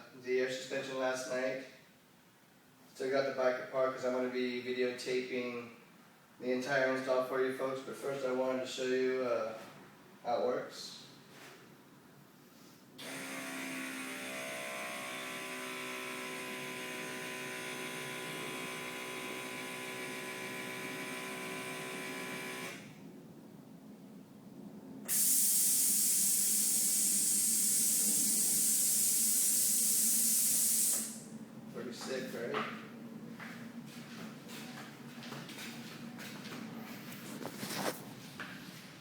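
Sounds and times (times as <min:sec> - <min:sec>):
electric compressor whining: 0:13.0 - 0:23.0, 0:25.1 - 0:31.3
air releasing hiss: 0:25.1 - 0:31.3.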